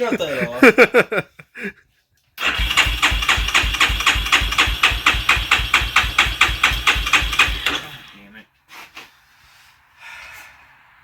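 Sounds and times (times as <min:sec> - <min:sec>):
engine idling thump: 0:02.5 - 0:08.0.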